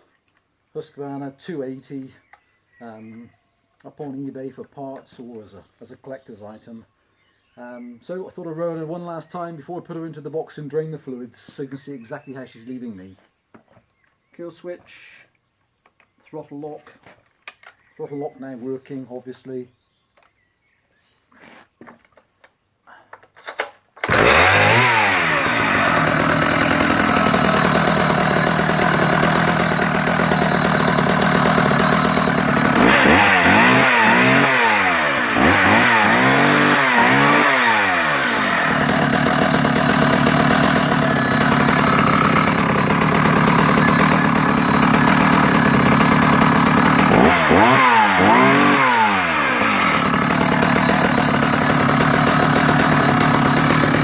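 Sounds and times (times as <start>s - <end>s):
chainsaw idling and revving: 24.0s - 54.0s.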